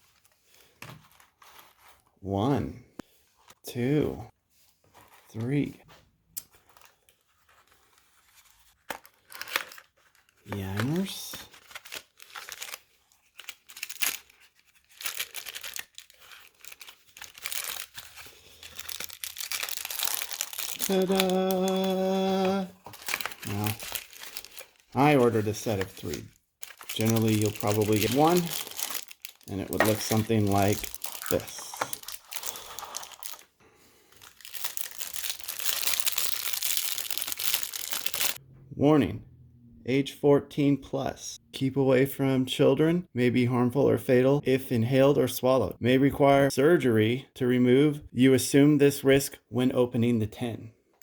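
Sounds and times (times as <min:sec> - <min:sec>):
packaging crinkling and tearing: 0:06.7 - 0:33.5, 0:34.1 - 0:38.4.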